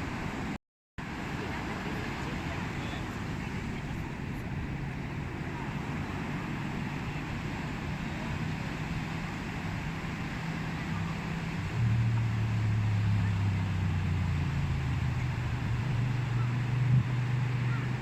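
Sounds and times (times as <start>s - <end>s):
engine humming: 2.1s - 18.0s
rushing noise: 9.8s - 18.0s.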